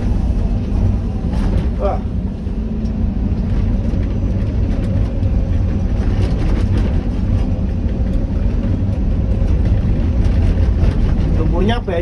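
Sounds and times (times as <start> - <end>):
excavator diesel engine rumbling: 0.0 - 12.0.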